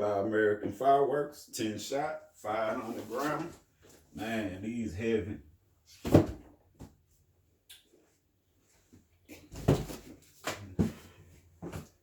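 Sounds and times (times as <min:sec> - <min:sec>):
dull knocks of cardboard boxes: 0:06.0 - 0:06.5, 0:09.5 - 0:11.9.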